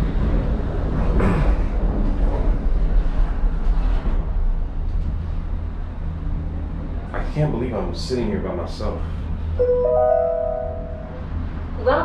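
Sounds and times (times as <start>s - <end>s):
gondola cabin rumble: 0.0s - 12.0s.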